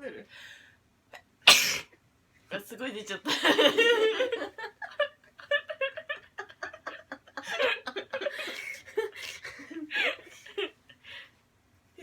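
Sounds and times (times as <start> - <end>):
woman sneezing: 1.5 - 1.9
women giggling: 3.3 - 10.8.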